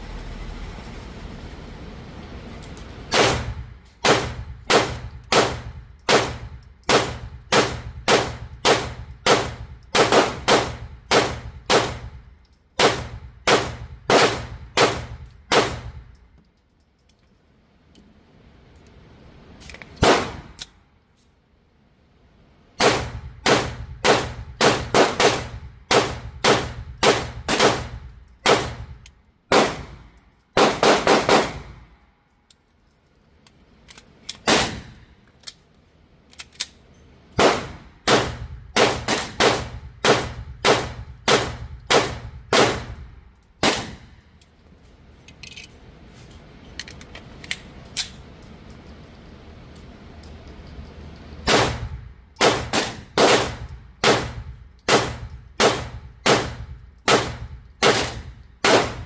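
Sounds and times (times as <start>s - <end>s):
gunshots: 3.1s - 12.2s, 12.8s - 16.0s, 20.0s - 20.6s, 22.8s - 28.9s, 29.5s - 30.0s, 30.6s - 31.8s, 34.4s - 35.0s, 37.4s - 43.0s, 43.6s - 44.2s, 51.5s - 59.0s.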